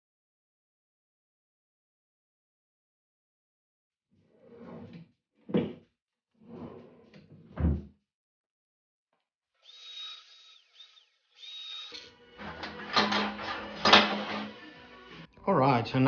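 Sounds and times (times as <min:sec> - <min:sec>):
metal workpieces knocking: 0:12.4 - 0:14.6.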